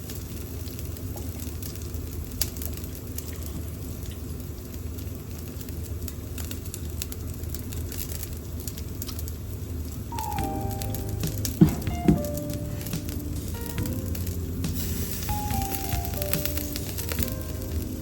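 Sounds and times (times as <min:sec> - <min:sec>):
range hood fan humming: 0:10.0 - 0:18.0
meat sizzling on a grill: 0:12.3 - 0:18.0.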